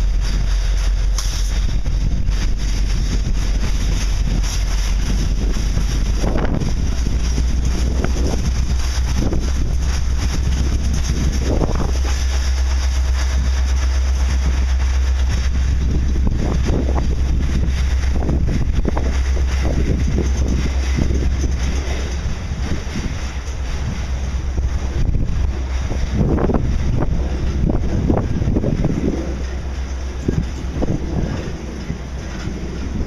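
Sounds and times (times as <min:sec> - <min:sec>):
freight train rolling on track: 0:00.0 - 0:33.0
wind buffeting microphone: 0:00.0 - 0:33.0.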